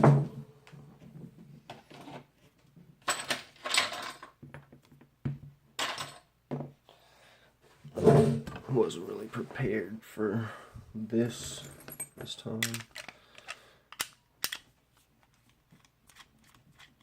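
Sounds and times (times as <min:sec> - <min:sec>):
metal parts clinking and scraping: 0:03.0 - 0:04.3, 0:11.5 - 0:14.7.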